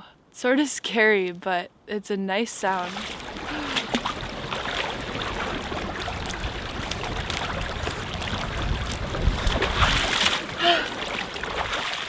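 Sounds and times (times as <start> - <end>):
river water flowing: 2.6 - 12.0
small splashes: 2.7 - 12.0
low rumbles: 3.0 - 11.7.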